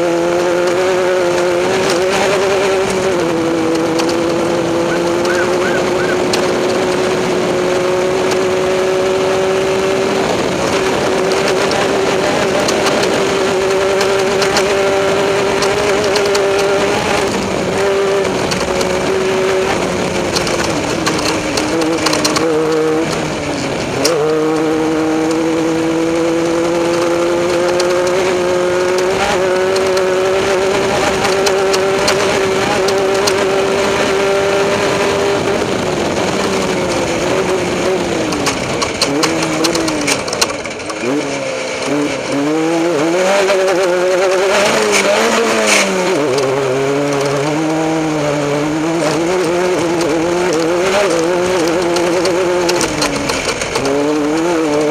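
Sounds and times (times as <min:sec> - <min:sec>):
race vehicle engine revving: 0:00.0 - 0:54.9
knocks and rattles: 0:00.1 - 0:54.9.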